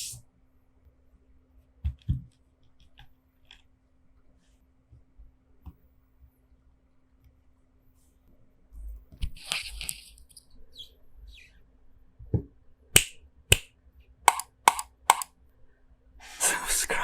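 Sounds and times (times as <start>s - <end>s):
mechanical keyboard keystrokes: 14.3s - 15.3s.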